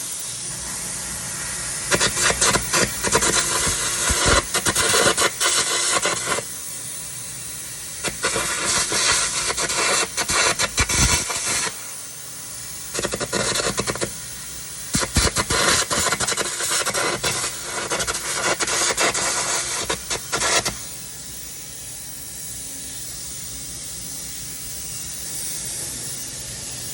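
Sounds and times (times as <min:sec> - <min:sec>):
steady hiss: 0:00.0 - 0:26.9
welding arc crackling: 0:00.0 - 0:26.9.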